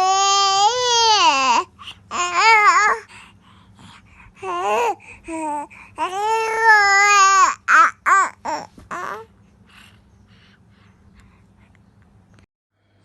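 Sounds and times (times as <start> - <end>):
infant crying and babbling: 0.0 - 3.1, 4.4 - 9.3.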